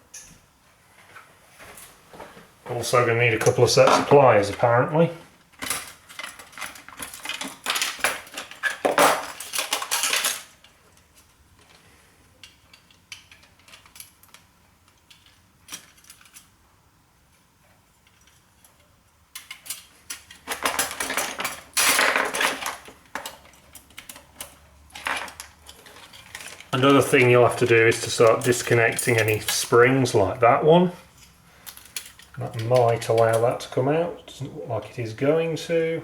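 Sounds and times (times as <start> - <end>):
metal parts clinking and rattling: 5.5 - 11.8, 12.4 - 16.6, 18.0 - 29.8, 31.2 - 33.6.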